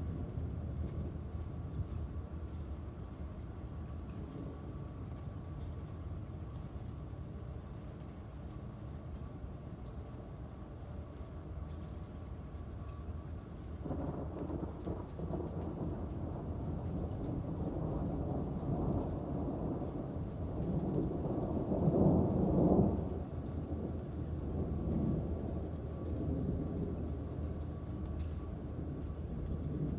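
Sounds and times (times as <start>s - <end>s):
steady rain: 0.0s - 29.9s
rolling thunder: 13.8s - 29.9s.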